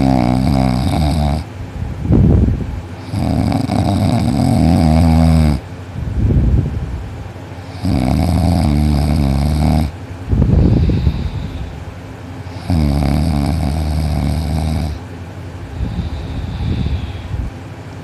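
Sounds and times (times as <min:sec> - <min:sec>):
boy snoring loudly: 0:00.0 - 0:01.5, 0:03.0 - 0:05.6, 0:07.7 - 0:10.0, 0:12.5 - 0:15.0
breathy puffs: 0:10.5 - 0:12.7, 0:15.7 - 0:17.6.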